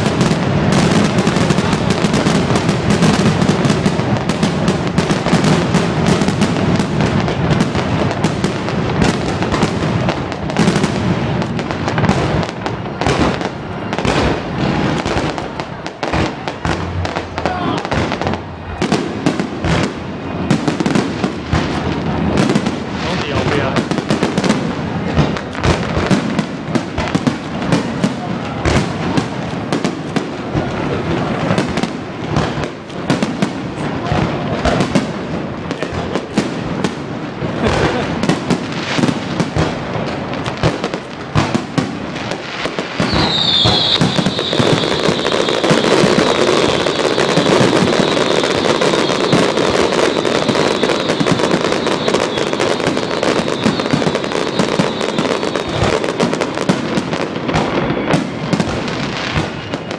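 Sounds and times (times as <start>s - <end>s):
fireworks bangs and crackles: 0.0s - 59.9s
high firework whistle: 42.6s - 59.9s.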